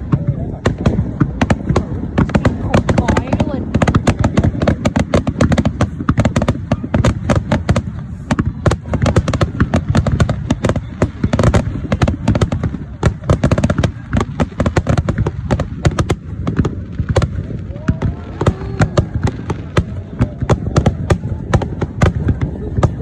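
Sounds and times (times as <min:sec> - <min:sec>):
deep rumble of booms: 0:00.0 - 0:23.0
fireworks cracks and bangs: 0:00.0 - 0:23.0.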